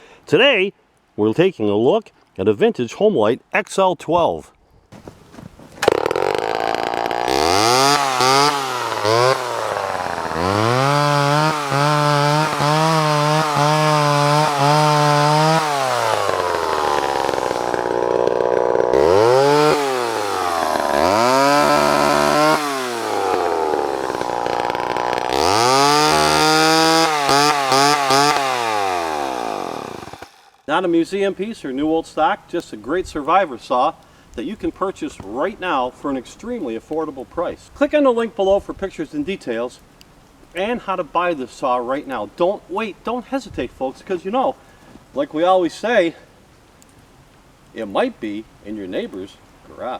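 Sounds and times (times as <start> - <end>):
chainsaw revving: 5.8 - 30.7.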